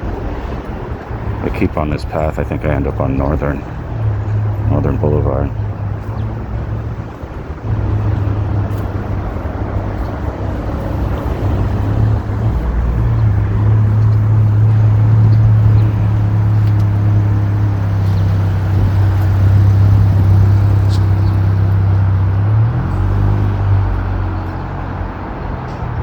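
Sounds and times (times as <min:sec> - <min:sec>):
vehicle engine running: 0:00.0 - 0:25.9.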